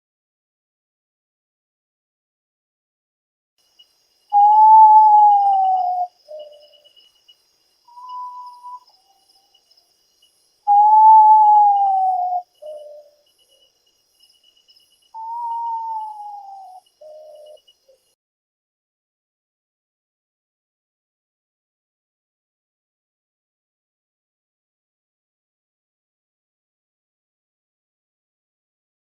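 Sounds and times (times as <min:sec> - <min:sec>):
insects trilling: 0:03.6 - 0:18.2
bird whistling calls: 0:04.3 - 0:06.8, 0:07.9 - 0:09.2, 0:10.7 - 0:13.2, 0:15.1 - 0:17.7.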